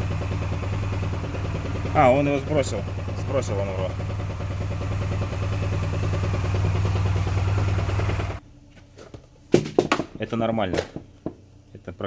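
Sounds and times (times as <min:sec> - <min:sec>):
scooter engine idling with knocking: 0:00.0 - 0:08.4.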